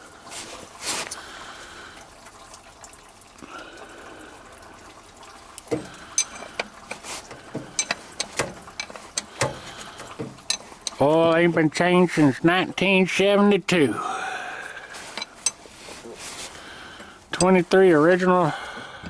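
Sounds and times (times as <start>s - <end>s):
oil pouring into container: 0.0s - 13.2s, 14.1s - 17.4s
sharp clicks and knocks: 5.6s - 11.7s.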